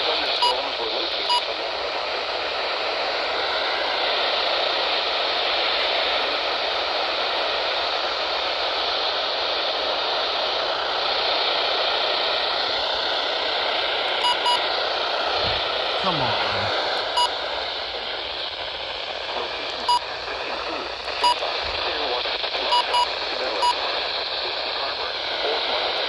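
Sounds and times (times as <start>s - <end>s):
radio static hiss: 0.0s - 26.0s
short double beep: 14.2s - 14.6s, 22.7s - 23.8s.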